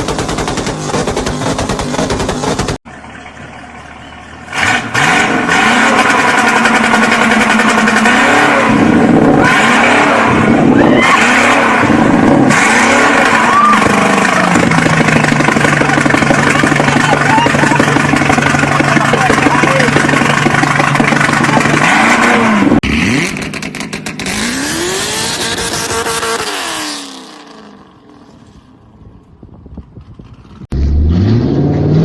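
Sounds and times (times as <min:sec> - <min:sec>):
car engine revving and idling: 0:00.0 - 0:28.4
rapid clattering run: 0:13.9 - 0:21.9.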